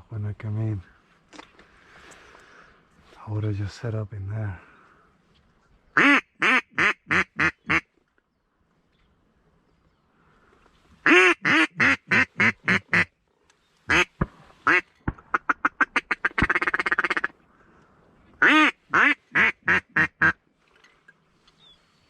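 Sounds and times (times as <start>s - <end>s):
duck call quacks: 6.0s - 7.8s, 11.0s - 13.1s, 13.9s - 17.3s, 18.4s - 20.4s.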